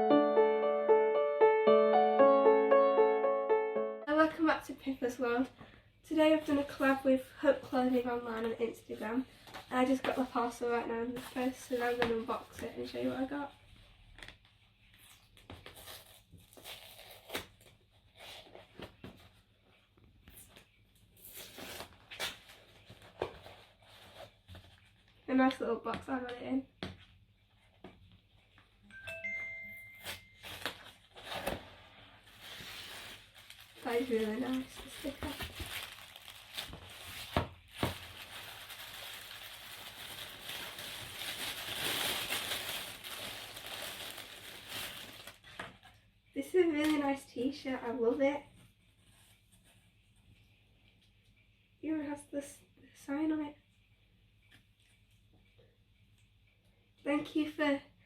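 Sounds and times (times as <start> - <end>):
packaging rustling and tearing: 14.0 - 19.3, 20.3 - 25.2, 30.0 - 45.9.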